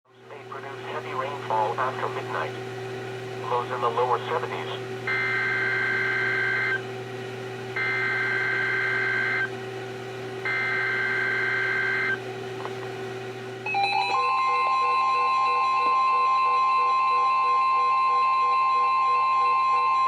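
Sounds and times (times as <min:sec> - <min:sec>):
steady low hum: 0:00.1 - 0:20.0
buzzing two-tone digital data: 0:05.1 - 0:06.8, 0:07.8 - 0:09.5, 0:10.5 - 0:12.2, 0:13.7 - 0:20.0
warning alarm tone: 0:05.1 - 0:06.8, 0:07.8 - 0:09.5, 0:10.4 - 0:12.2, 0:13.6 - 0:20.0.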